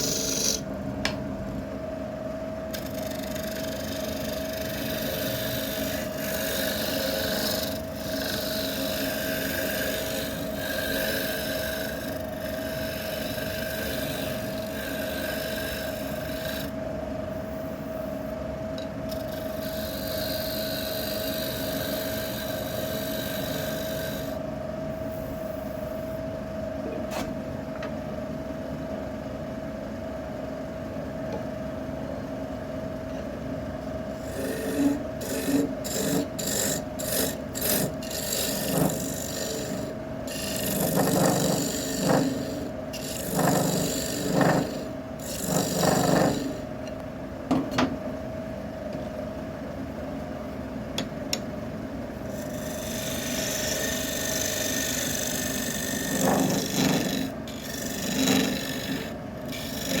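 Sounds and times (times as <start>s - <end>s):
turning tool rasping on wood: 0.0s - 0.7s, 2.7s - 16.8s, 19.1s - 24.4s, 34.2s - 46.7s, 52.3s - 60.0s
wood lathe motor hum: 0.0s - 1.2s, 2.7s - 24.4s, 34.1s - 47.0s, 52.2s - 60.0s.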